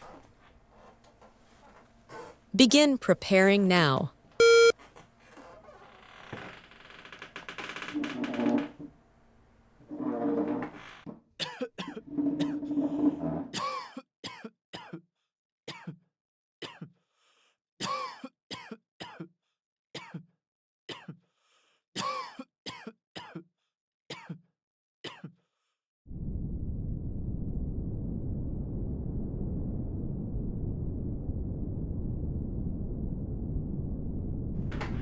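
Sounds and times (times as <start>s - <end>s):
person coughing: 11.4s - 12.6s, 13.6s - 15.1s, 15.7s - 16.0s, 16.6s - 17.0s, 17.8s - 19.3s, 20.0s - 20.3s, 20.9s - 21.2s, 22.0s - 23.5s, 24.1s - 24.5s, 25.1s - 25.4s.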